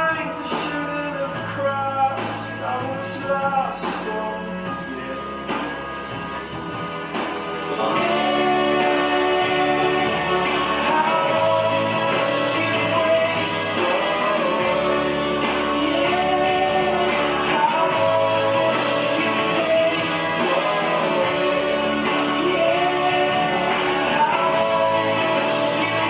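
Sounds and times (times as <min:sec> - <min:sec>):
pop rock song with singing: 0:00.0 - 0:26.0.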